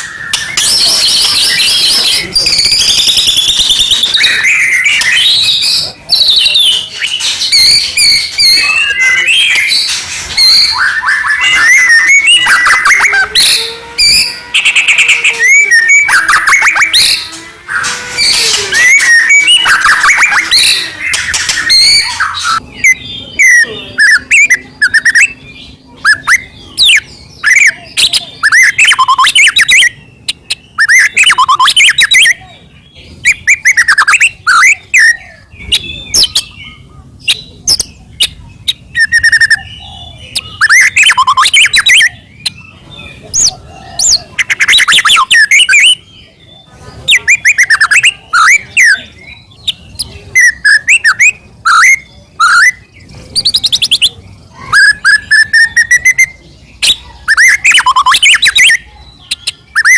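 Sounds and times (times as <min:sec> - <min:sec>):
bird song with whistles and trills: 0:00.0 - 0:59.9.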